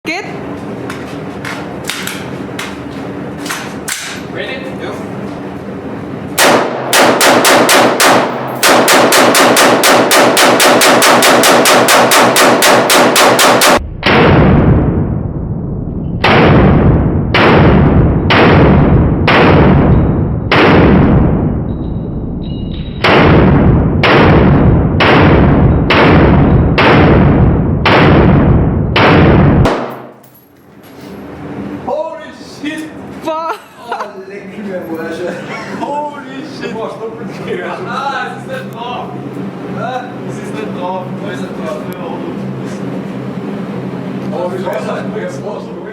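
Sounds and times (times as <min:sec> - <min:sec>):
rifle rapid fire: 0:06.4 - 0:15.3, 0:16.2 - 0:21.6, 0:23.0 - 0:30.2
slow deep gunshots: 0:06.4 - 0:22.4, 0:23.0 - 0:30.2.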